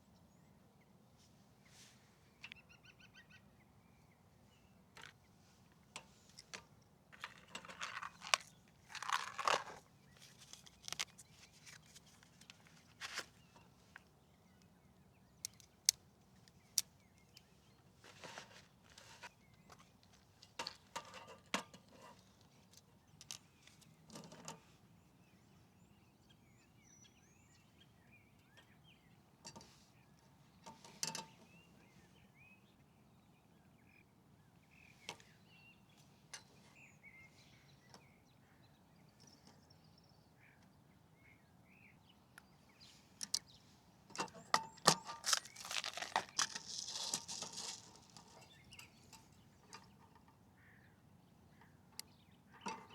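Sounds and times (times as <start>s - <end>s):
faint bird chirps: 1.6s - 5.4s
rustles of handling: 5.0s - 14.2s, 15.5s - 24.7s, 42.8s - 49.9s.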